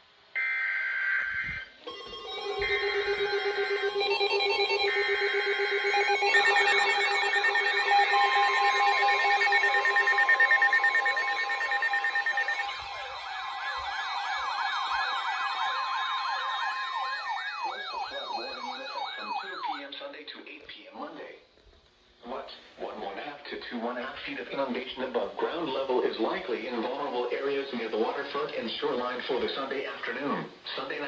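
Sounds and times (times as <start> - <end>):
fast yelp siren: 0.4 - 19.9
steady alarm tone: 1.2 - 19.9
wailing siren sweeps: 1.2 - 19.9
electronic beeping tones: 1.9 - 19.8.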